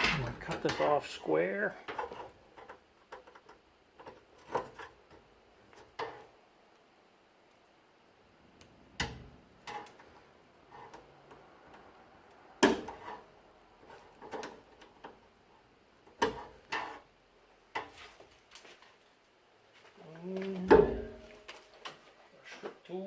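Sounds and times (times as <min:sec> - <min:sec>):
hand tools clicking and knocking: 0:00.0 - 0:01.2.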